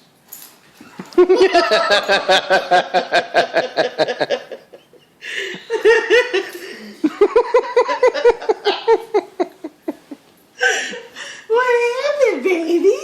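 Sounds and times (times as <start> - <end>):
people laughing hard: 1.0 - 11.1.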